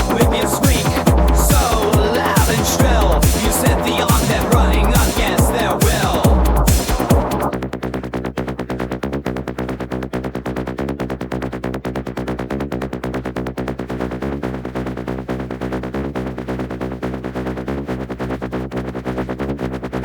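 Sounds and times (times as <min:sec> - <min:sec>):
sustained bass notes: 0:00.0 - 0:07.8
fast synth pulse: 0:00.0 - 0:12.0.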